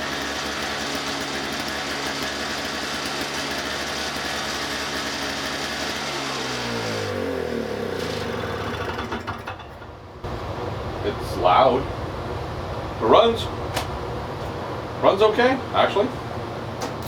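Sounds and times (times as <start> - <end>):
snowblower engine running: 0.0 - 11.8
steady hum: 10.0 - 17.0.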